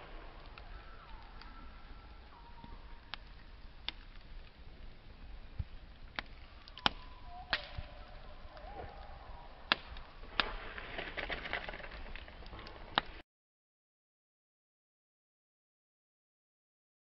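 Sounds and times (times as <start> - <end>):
wood fire crackling: 0.0 - 13.2
faint thin whistle: 6.7 - 9.0.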